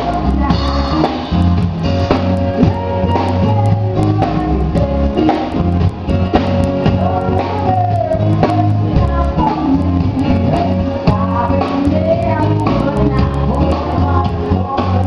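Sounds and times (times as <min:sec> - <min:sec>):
band with steady beat: 0:00.0 - 0:15.0
person singing: 0:00.0 - 0:15.0.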